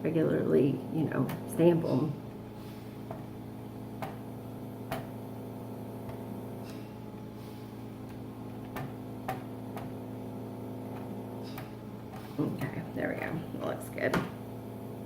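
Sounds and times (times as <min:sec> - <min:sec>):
ink pad tapping: 0:04.0 - 0:04.2.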